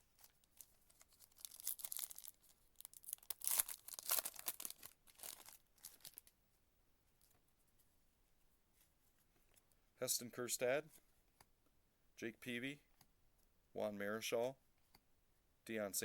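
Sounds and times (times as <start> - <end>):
plastic wrapper crinkling: 0.2 - 6.4.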